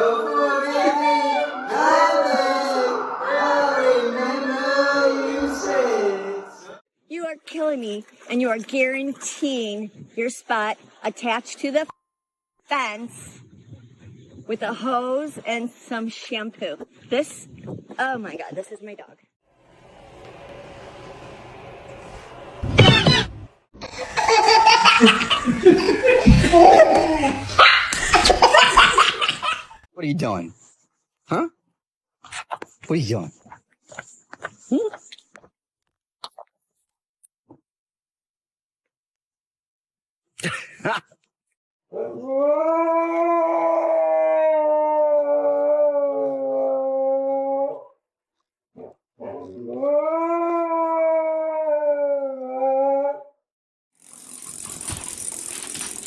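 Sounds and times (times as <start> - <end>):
dog howling: 0.0 - 6.8, 41.9 - 47.9, 49.2 - 53.3
person laughing hard: 23.8 - 29.8.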